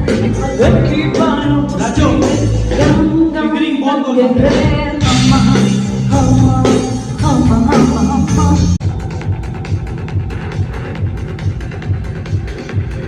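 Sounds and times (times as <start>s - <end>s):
loud party music with singing: 0.0s - 13.0s.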